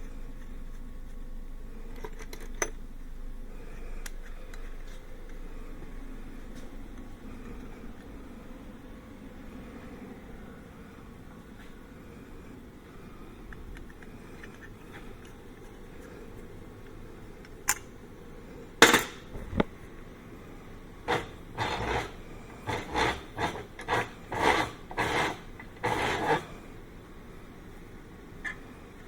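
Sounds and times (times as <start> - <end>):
scraping on metal: 21.0 - 26.6.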